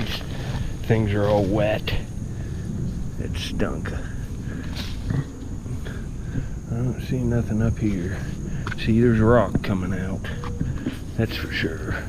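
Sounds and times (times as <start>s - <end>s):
footsteps: 0.0s - 2.0s
steady low rumble: 0.0s - 12.0s.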